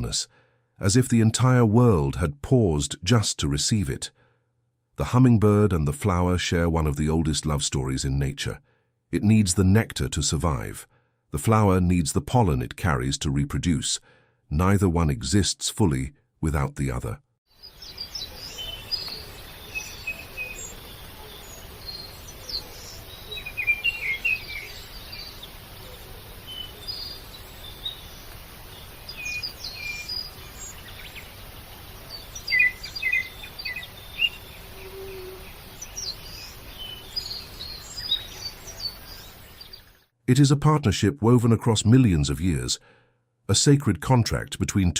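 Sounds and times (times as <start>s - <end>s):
small birds chirping: 17.5s - 40.2s
background hiss: 17.5s - 40.5s.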